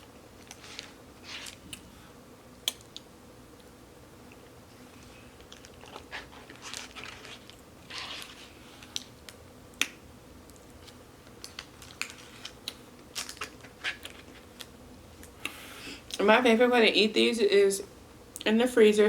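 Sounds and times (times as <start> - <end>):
chewing with mouth clicks: 4.3 - 16.2.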